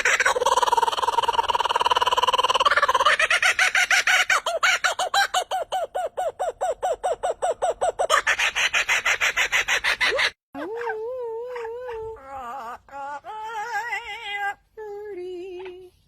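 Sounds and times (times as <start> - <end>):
bird trilling and calling: 0.0 - 10.9.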